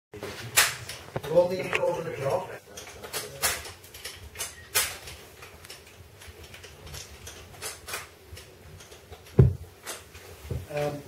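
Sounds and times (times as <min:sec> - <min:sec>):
low thump: 0:09.4 - 0:09.6.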